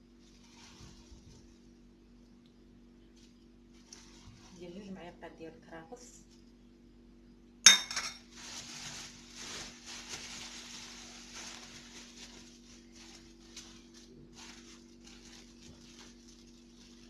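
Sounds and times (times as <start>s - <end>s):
metal spoon clinking on pot: 7.7s - 8.2s.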